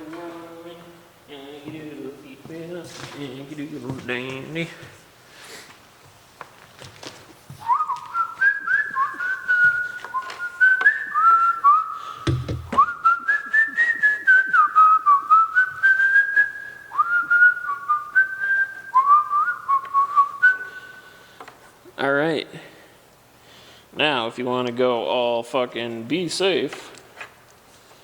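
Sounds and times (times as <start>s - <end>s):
man whistling a tune: 7.6s - 21.1s
dull thump: 12.2s - 12.9s.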